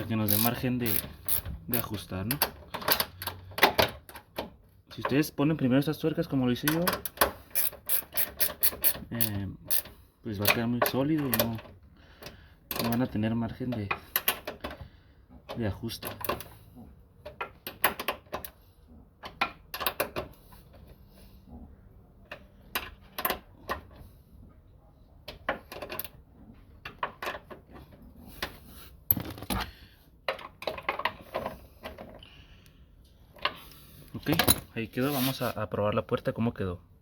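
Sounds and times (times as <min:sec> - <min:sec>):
wrench clicking on metal fasteners: 0:00.0 - 0:04.5, 0:06.6 - 0:11.7, 0:13.8 - 0:14.8.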